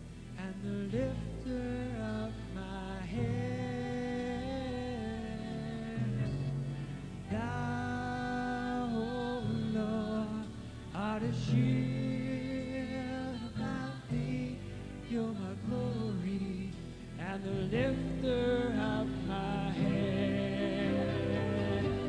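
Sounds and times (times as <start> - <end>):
person singing long wavering notes: 0.7 - 22.0
instrumental accompaniment: 17.8 - 22.0.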